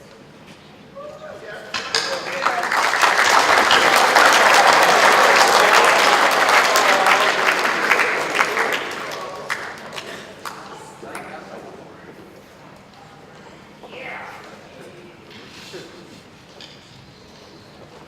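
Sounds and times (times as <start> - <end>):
audience applauding: 1.7 - 10.8.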